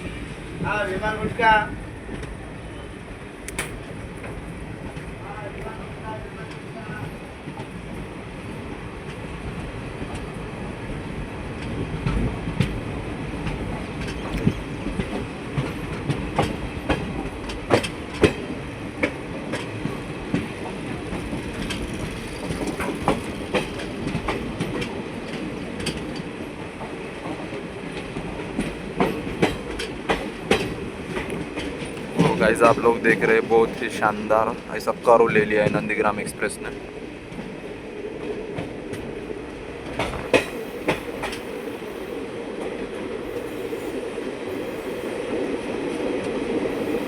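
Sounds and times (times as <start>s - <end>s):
train rumbling along track: 0.0s - 47.0s
wheels clacking over rail joints: 13.4s - 39.2s, 39.8s - 41.5s.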